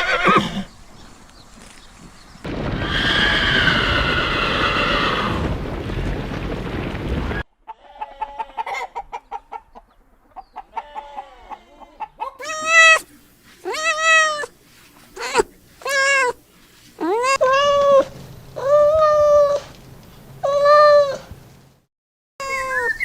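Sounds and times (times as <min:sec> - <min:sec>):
cat meowing loudly: 0:12.4 - 0:14.5, 0:15.2 - 0:16.4, 0:17.0 - 0:19.7, 0:20.4 - 0:21.3, 0:22.4 - 0:22.9.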